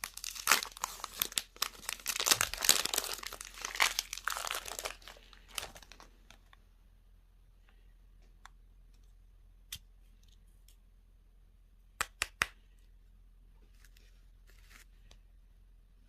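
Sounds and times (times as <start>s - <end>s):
wrapper rustling: 0.0s - 6.4s.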